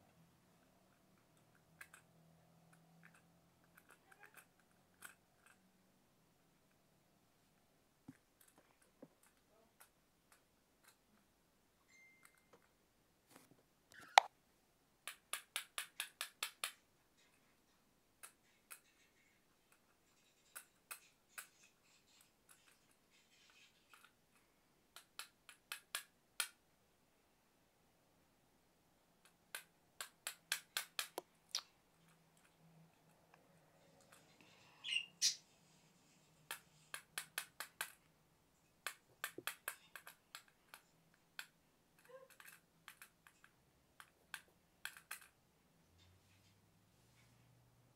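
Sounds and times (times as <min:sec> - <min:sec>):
plastic toys clicking: 0:38.8 - 0:45.4.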